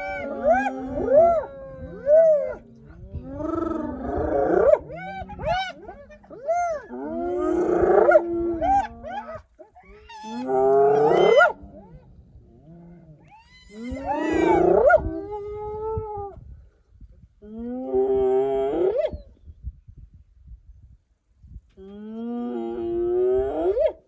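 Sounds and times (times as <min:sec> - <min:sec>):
hyenas calling: 0:00.0 - 0:11.6.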